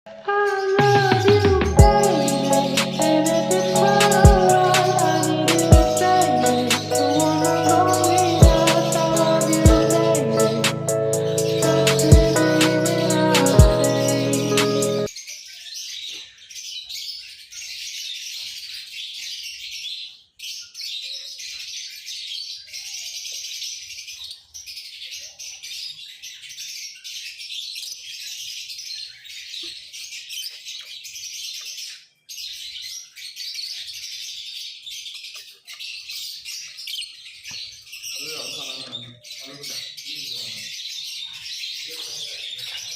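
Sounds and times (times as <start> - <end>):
lovebirds chirping: 0.2 - 17.4.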